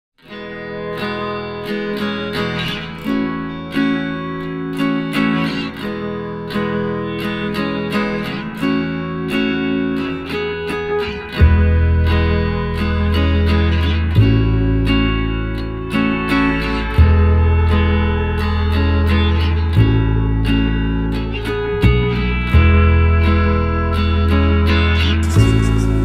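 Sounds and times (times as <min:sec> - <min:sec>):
plucked guitar chords: 0:00.2 - 0:26.0
deep bass: 0:14.0 - 0:15.9, 0:17.0 - 0:21.1, 0:21.8 - 0:26.0.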